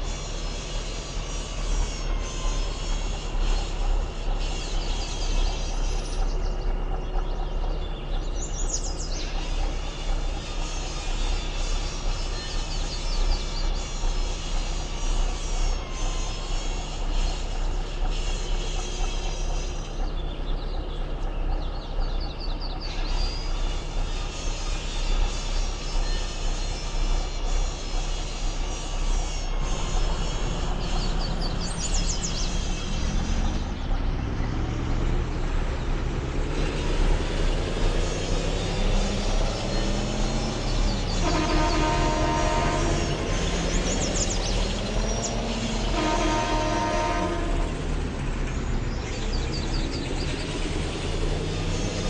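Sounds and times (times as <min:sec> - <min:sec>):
vehicle engine deep hum: 0:00.0 - 0:52.0
high rising whine: 0:23.4 - 0:52.0.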